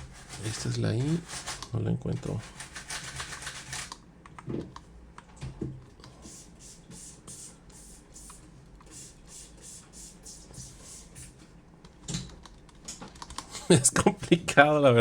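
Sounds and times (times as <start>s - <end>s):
keycaps clicking onto keyboard: 12.0s - 13.5s.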